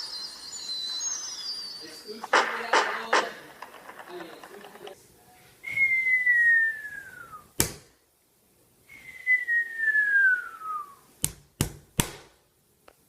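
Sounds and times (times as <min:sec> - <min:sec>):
descending whistle: 0:00.0 - 0:04.8, 0:05.6 - 0:07.5, 0:08.9 - 0:11.0
sharp knocks: 0:02.2 - 0:05.0.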